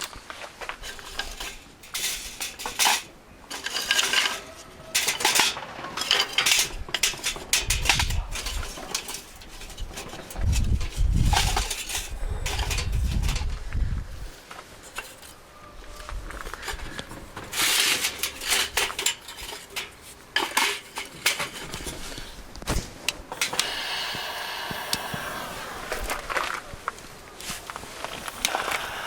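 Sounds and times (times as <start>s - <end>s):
rustling: 0.0s - 23.7s, 25.4s - 29.0s
metal clinking: 0.8s - 13.5s, 17.5s - 22.2s
wind rumbling on microphone: 9.6s - 14.4s, 15.6s - 17.4s, 21.8s - 29.0s.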